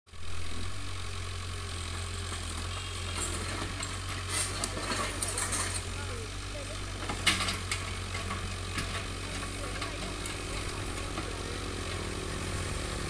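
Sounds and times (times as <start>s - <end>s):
diesel engine droning: 0.1s - 13.0s.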